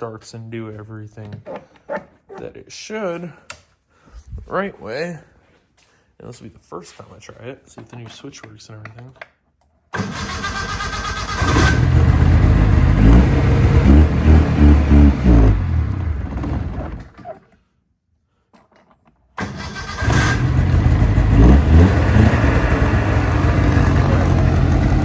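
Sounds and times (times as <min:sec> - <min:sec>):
snowmobile engine revving: 0:10.0 - 0:17.1, 0:19.4 - 0:25.0.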